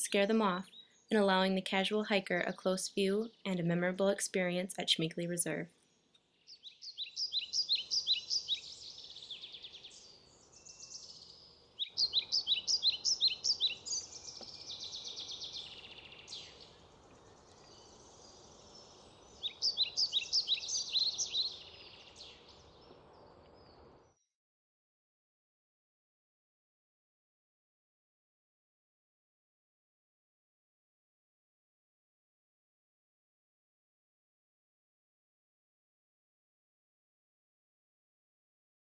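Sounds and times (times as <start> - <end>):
faint outdoor hiss: 0.0 - 24.1
songbird chirping: 0.0 - 24.2.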